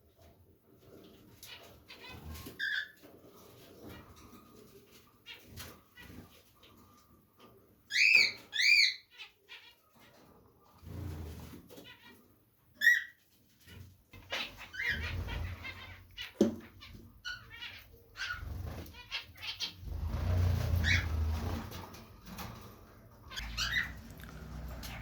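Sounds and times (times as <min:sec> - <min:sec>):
loud bird calls: 0:23.3 - 0:25.0.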